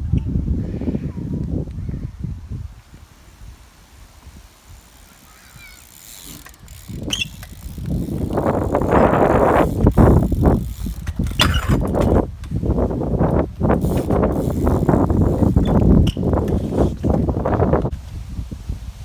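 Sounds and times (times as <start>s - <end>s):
bicycle rolling and scraping: 2.8s - 18.5s
bicycle sharp clicks: 4.6s - 17.9s.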